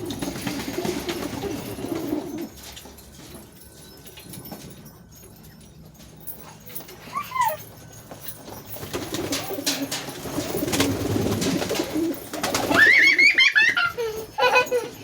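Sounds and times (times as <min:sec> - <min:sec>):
pigeons cooing: 0:00.0 - 0:02.7.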